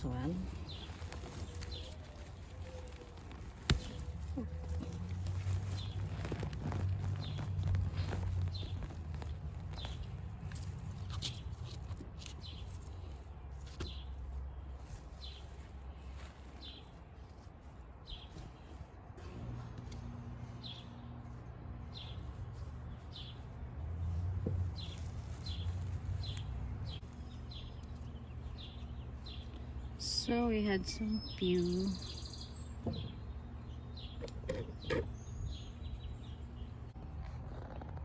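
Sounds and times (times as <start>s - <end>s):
small bird chirping: 20.4s - 37.8s.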